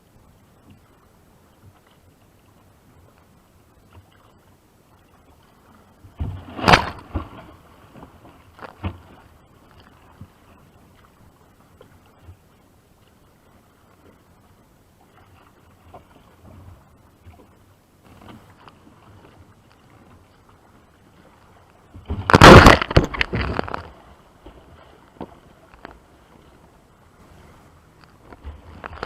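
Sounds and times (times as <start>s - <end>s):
water lapping: 0.0s - 29.0s
loud splashing water: 6.3s - 7.6s, 22.1s - 23.8s.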